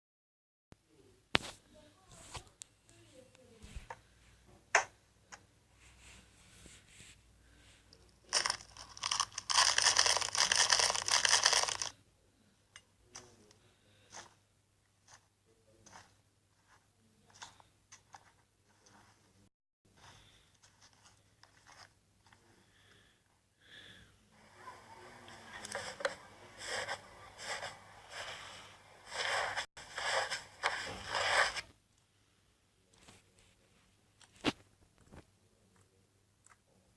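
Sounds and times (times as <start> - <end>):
slime crackling and popping: 8.3 - 11.9.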